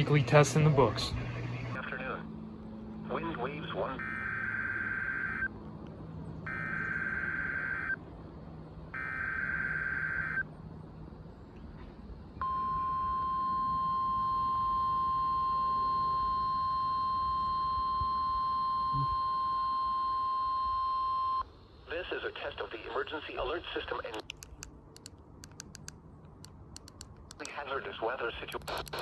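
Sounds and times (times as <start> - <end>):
steady warning alarm tone: 3.5 - 5.5, 6.5 - 8.0, 8.9 - 10.5, 12.4 - 21.5
radio hiss: 21.8 - 24.2, 27.4 - 29.0
digital data bursts: 28.6 - 29.0.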